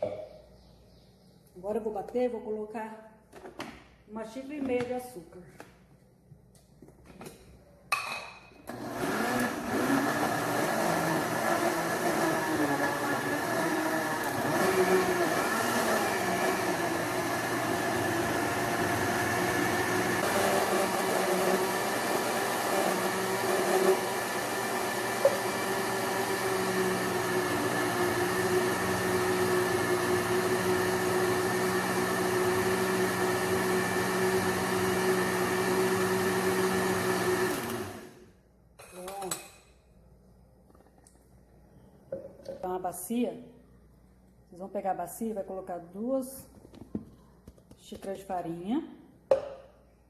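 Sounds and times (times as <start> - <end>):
countertop blender running: 8.7 - 38.2.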